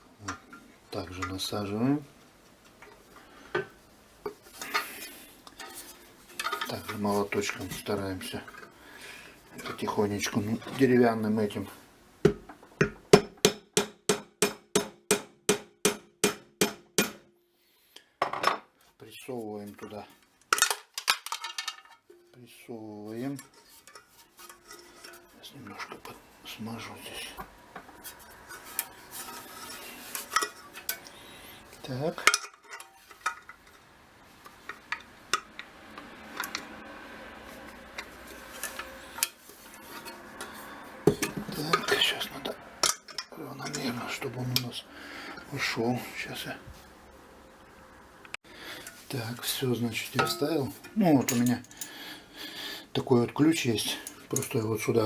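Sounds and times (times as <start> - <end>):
wooden mallet tapping metal: 12.2 - 17.3.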